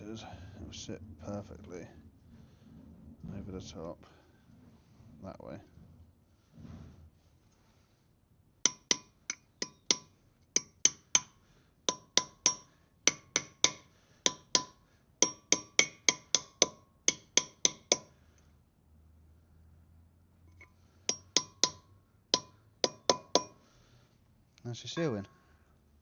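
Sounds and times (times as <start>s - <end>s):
hammer striking metal: 8.7s - 18.1s, 21.1s - 23.6s.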